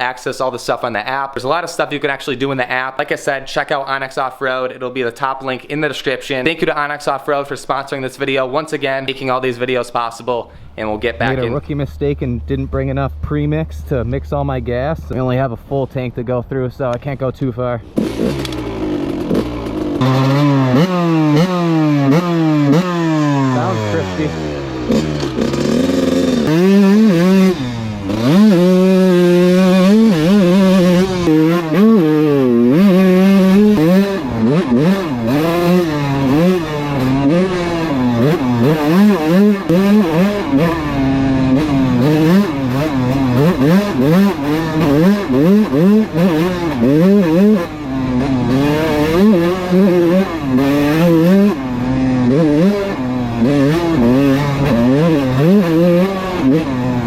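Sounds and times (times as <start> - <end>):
dirt bike engine revving: 6.6 - 14.6, 17.8 - 57.0.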